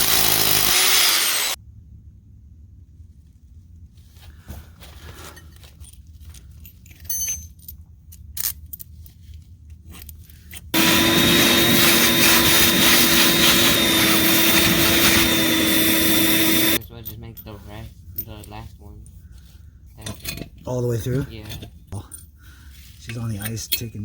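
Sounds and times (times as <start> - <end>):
hammer drill boring into concrete: 0.0 - 1.6, 10.8 - 16.8.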